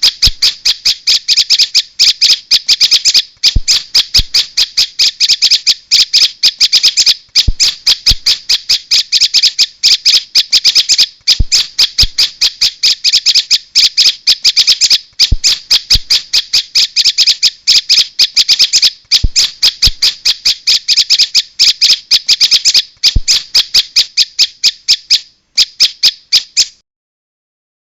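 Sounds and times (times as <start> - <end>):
bird rapid harsh chips: 0.0 - 26.8.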